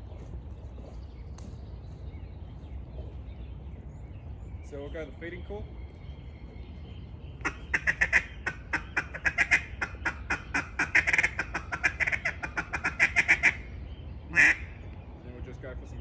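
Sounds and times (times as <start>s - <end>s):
duck call chatter: 7.4s - 13.7s, 14.3s - 14.7s.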